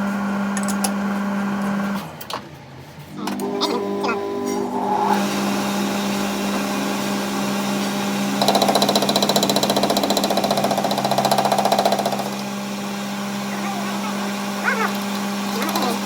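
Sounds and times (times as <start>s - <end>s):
workshop machine humming: 0.0s - 16.0s
fast mechanical rattle: 8.4s - 12.5s.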